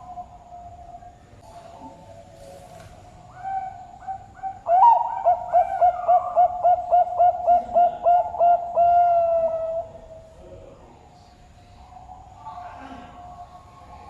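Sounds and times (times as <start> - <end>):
dove cooing: 0.0 - 10.3.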